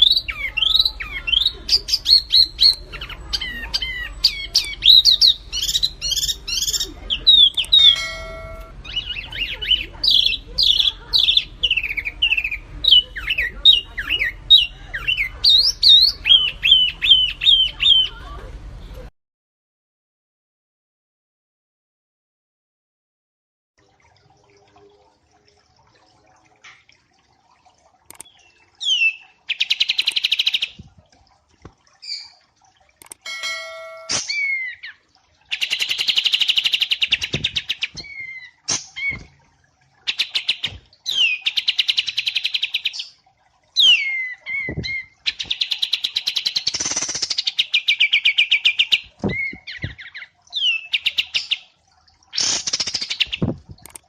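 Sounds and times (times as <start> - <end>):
songbird trills: 0.0 - 18.2, 33.1 - 39.3.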